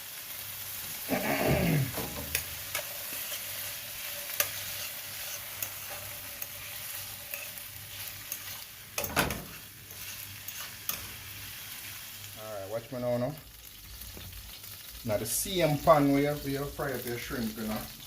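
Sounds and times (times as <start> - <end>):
shrimp sizzling in a pan: 0.0 - 18.0
utensil stirring in a pan: 0.2 - 12.4.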